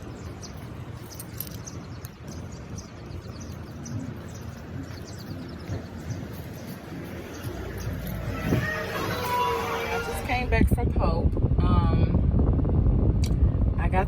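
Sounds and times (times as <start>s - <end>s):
small birds chirping: 0.0s - 10.1s
steady low rumble: 0.0s - 14.0s.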